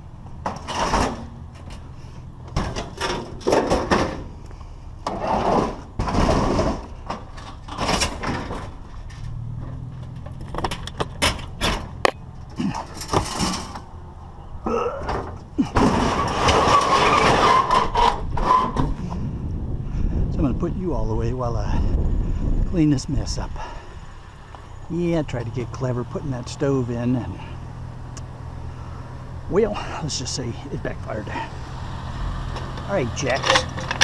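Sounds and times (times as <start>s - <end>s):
debris knocking and scraping: 0.3s - 4.4s, 5.0s - 13.9s, 15.0s - 19.1s, 32.6s - 34.0s
low steady hum: 19.2s - 34.0s.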